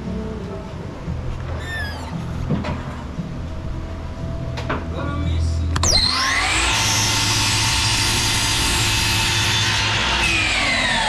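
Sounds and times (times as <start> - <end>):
electric power saw whining: 5.8 - 11.0.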